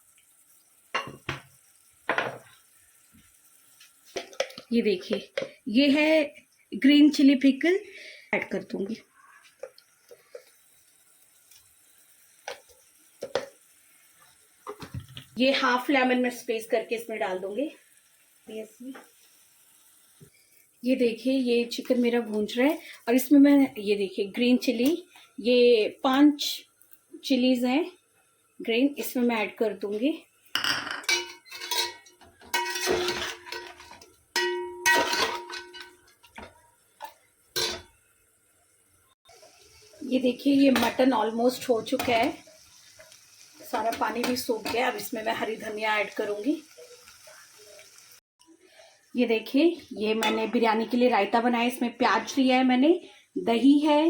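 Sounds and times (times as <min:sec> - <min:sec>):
spoon clinking on a pot: 0:30.6 - 0:37.9, 0:50.2 - 0:50.6.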